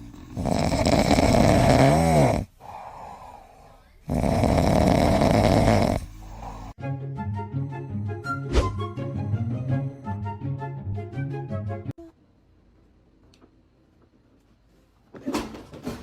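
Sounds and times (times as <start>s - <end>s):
dog snoring: 0.0s - 3.4s, 4.1s - 6.7s
dog breathing: 0.0s - 6.8s
music: 6.8s - 12.0s.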